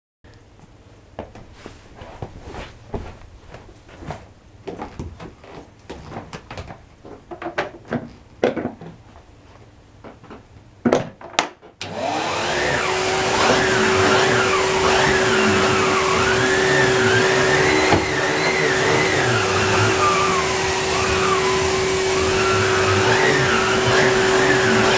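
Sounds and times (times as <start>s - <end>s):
vacuum cleaner running: 11.8s - 24.9s.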